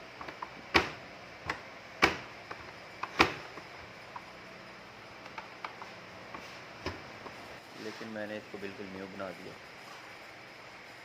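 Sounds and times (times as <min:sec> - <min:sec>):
washing machine loud clicks: 0:00.2 - 0:03.6.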